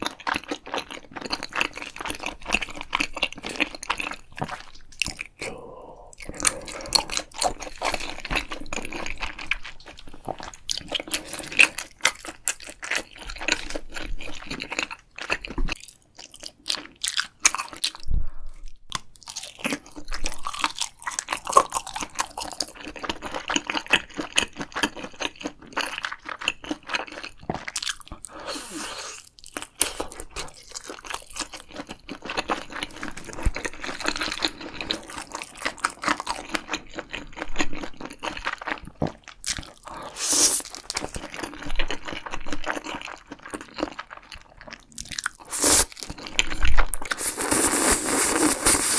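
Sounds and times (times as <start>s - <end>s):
crunching and wet chewing: 0.0s - 18.1s, 18.7s - 48.9s.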